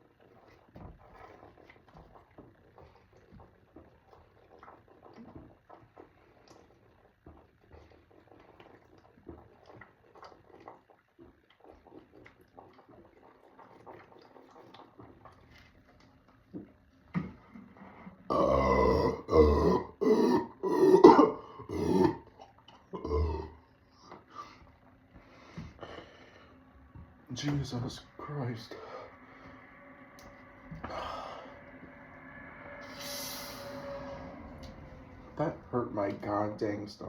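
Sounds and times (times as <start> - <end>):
man belching: 18.3 - 22.3, 22.9 - 23.6.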